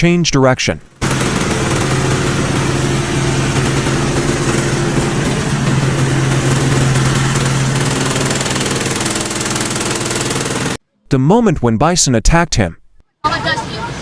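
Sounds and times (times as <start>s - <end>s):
engine running: 0.0s - 10.8s.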